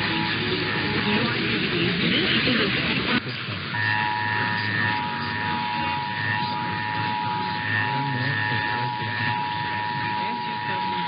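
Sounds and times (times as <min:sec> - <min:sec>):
two-tone alarm signal: 0:00.0 - 0:01.4, 0:03.7 - 0:11.0
broadcast hiss: 0:00.0 - 0:11.0.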